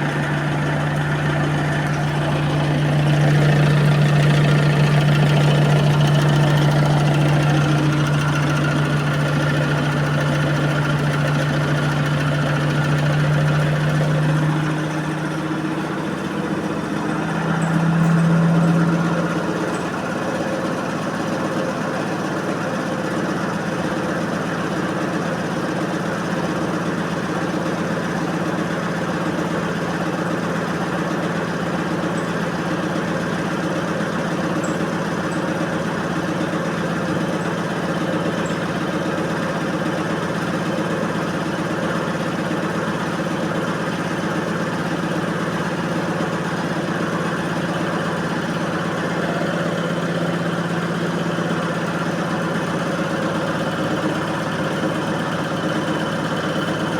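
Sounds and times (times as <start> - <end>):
washing machine running: 0.0 - 22.8.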